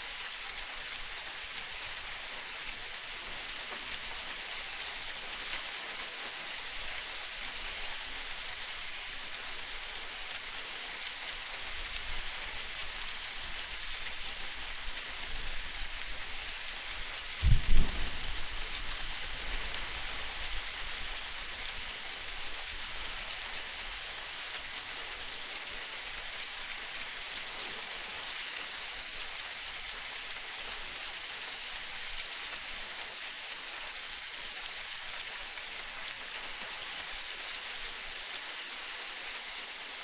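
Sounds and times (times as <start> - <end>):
rain falling on a surface: 0.0 - 40.0
low rumble: 17.4 - 18.8.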